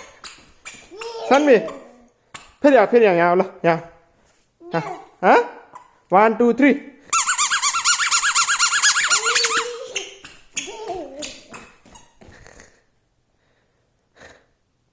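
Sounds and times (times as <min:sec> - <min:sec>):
squeaky shoes squeaking: 0:00.0 - 0:02.5, 0:07.1 - 0:12.2.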